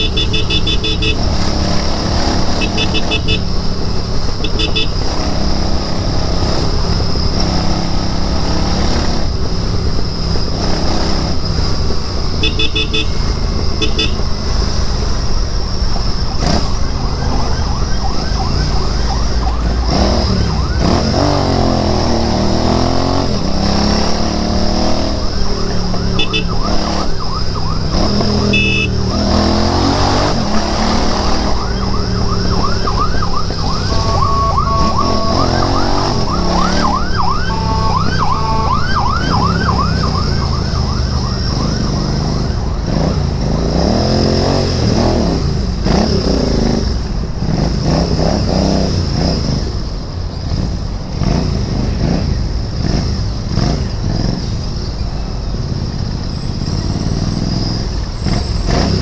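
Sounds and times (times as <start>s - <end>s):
siren rising and falling: 0.0s - 3.5s, 16.4s - 45.1s
motorcycle engine running: 0.0s - 7.2s, 11.3s - 17.0s, 25.5s - 29.1s
short high beeps: 2.6s - 3.5s, 28.5s - 29.0s, 33.6s - 39.4s.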